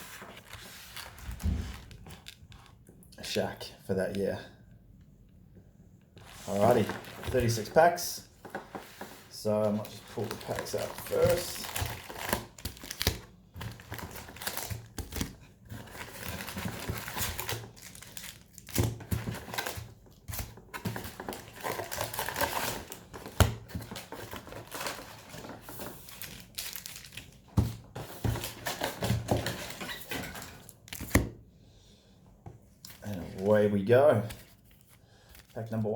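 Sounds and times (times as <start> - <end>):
card packs crinkling: 6.4 - 31.2, 32.8 - 35.8.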